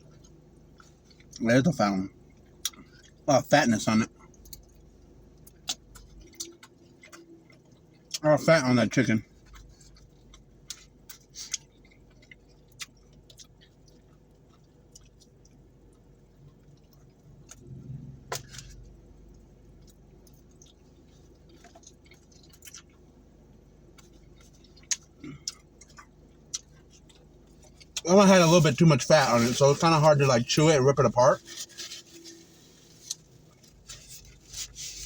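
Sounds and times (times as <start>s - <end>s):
person chewing meat: 0.0s - 1.4s, 2.2s - 3.3s, 4.1s - 8.2s, 9.3s - 28.4s.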